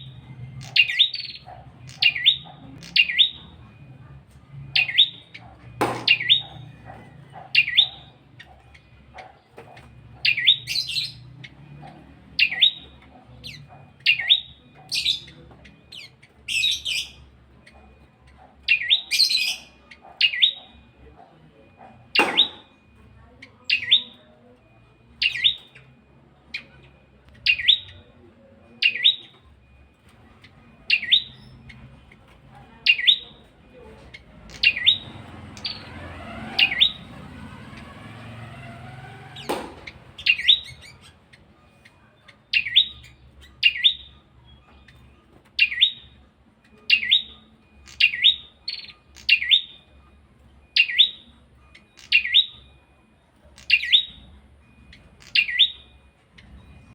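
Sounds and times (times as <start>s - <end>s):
sharp knock: 5.8s - 6.2s, 39.5s - 39.9s
rushing background noise: 33.2s - 42.1s.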